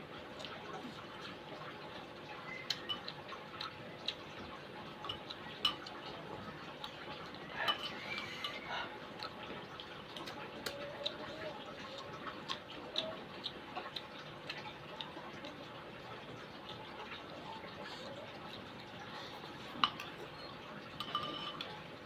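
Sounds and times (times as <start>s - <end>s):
eating noises: 0.0s - 22.0s
faint steady hum: 0.0s - 22.0s
metal spoon scraping a bowl: 7.6s - 8.6s, 21.0s - 21.7s.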